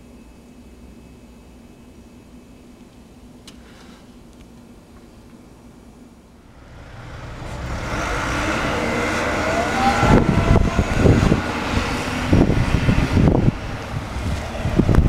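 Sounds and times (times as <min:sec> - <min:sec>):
motor vehicle driving past: 0:06.4 - 0:15.0
wind buffeting microphone: 0:06.5 - 0:15.0.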